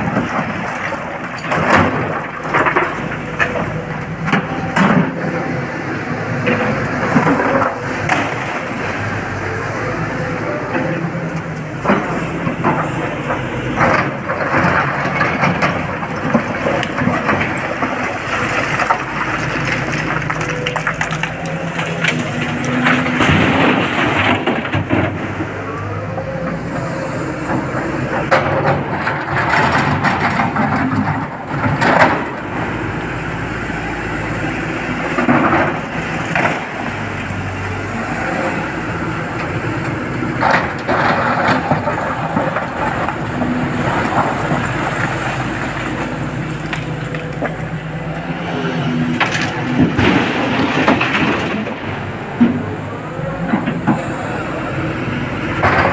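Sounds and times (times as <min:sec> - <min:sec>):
excavator diesel engine under load: 0:00.0 - 0:55.9
rock and steel bucket crashing: 0:11.8 - 0:25.5, 0:49.0 - 0:52.6.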